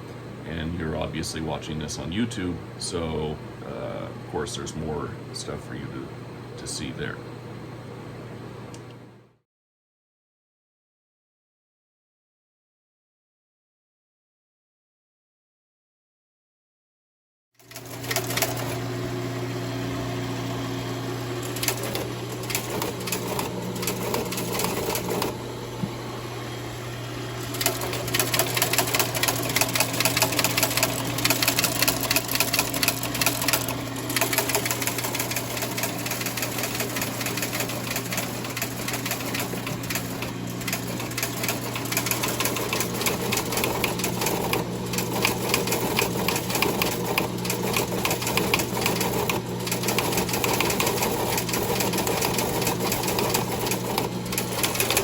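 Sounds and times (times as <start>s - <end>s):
teletype clattering: 17.6s - 18.8s, 21.4s - 25.4s, 27.4s - 55.0s
teleprinter motor hum: 17.6s - 55.0s.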